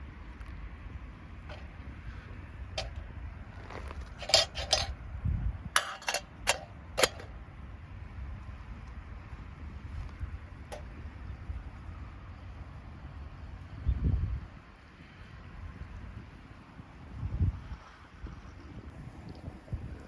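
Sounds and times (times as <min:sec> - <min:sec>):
hard objects clinking and knocking: 0:05.8 - 0:07.3.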